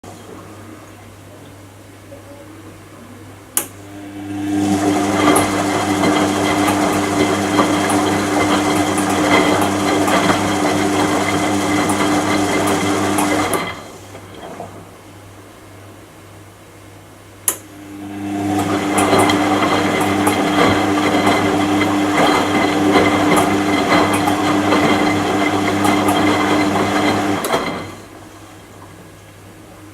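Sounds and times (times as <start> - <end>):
washing machine motor humming: 2.7 - 29.9
click: 3.6 - 3.8, 17.4 - 17.7.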